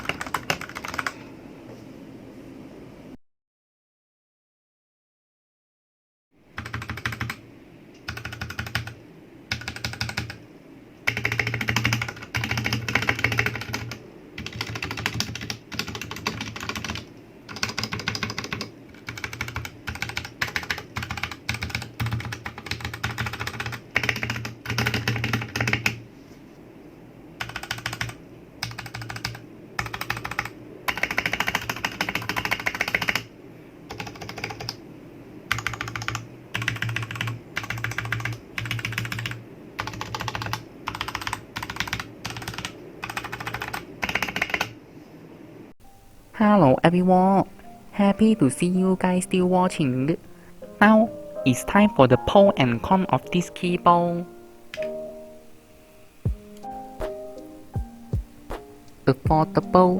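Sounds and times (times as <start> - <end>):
mechanical keyboard typing: 0.0 - 1.2, 6.6 - 7.4, 8.0 - 10.4, 11.0 - 26.0, 27.4 - 33.3, 33.9 - 34.8, 35.5 - 44.7.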